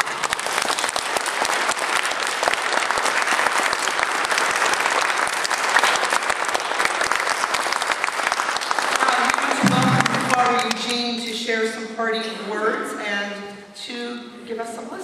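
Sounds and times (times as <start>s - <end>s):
audience applauding: 0.0s - 10.9s.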